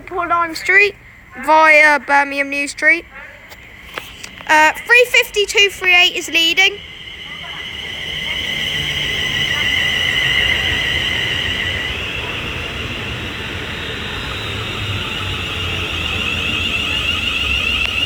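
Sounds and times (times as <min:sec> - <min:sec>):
train wheels rumbling: 0:00.0 - 0:18.0
high-pitched two-note squeal: 0:04.4 - 0:18.0.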